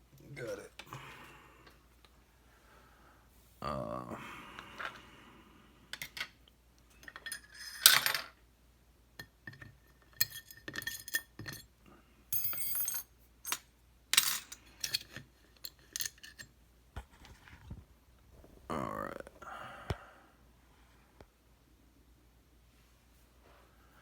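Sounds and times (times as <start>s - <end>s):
metal tools clinking: 12.4s - 13.6s.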